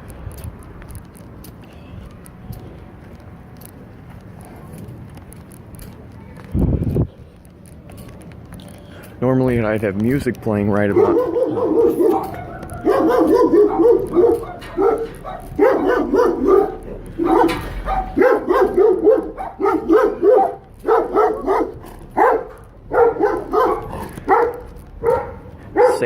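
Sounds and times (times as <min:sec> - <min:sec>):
dog barking: 0:10.8 - 0:26.0.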